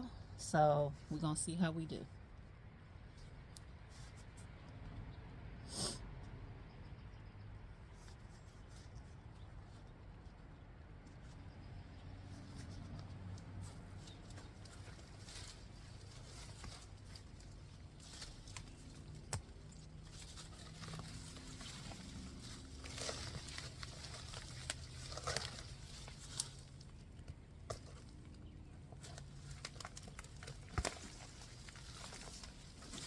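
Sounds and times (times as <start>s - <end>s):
rustling of plant and fabric bag: 7.9s - 33.0s.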